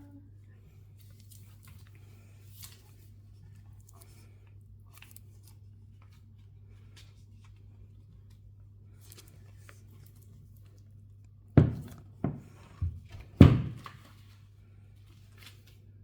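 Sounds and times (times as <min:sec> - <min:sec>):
dull thuds: 0:11.6 - 0:13.9.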